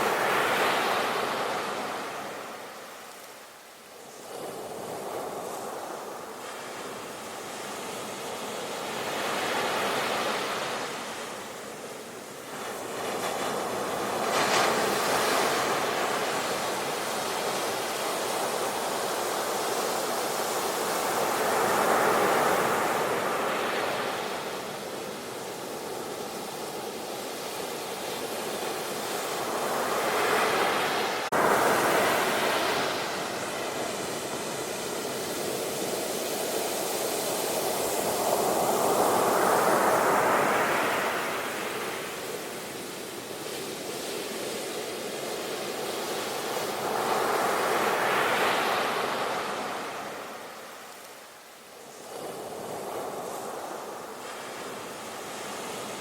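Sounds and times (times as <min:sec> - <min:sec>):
sea waves breaking: 0:28.4 - 0:42.5.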